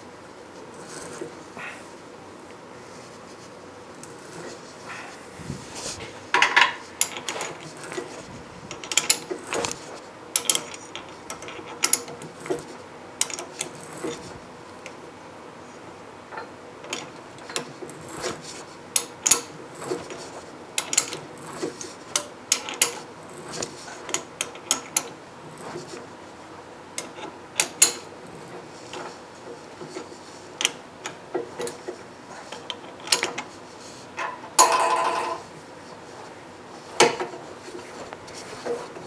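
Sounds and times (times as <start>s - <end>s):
metallic clicks and clunks: 6.3s - 12.6s.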